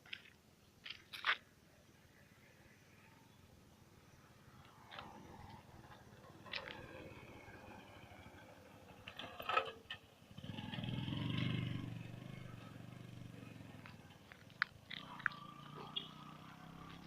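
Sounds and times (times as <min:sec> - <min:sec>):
vehicle engine passing by: 0:04.7 - 0:09.3, 0:10.3 - 0:17.0.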